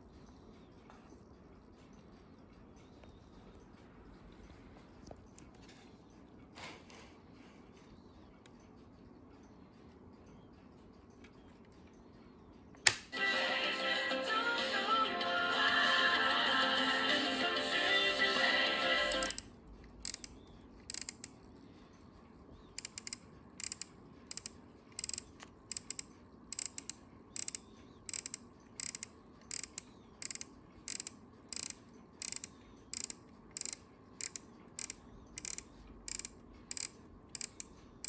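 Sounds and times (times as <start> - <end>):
flip clock cards clicking: 19.1 - 21.4, 22.8 - 38.0.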